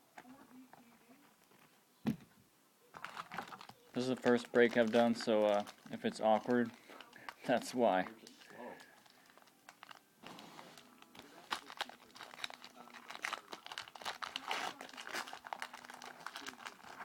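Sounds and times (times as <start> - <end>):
cards rustling: 2.9 - 17.0
foil wrapper crinkling and tearing: 3.0 - 17.0.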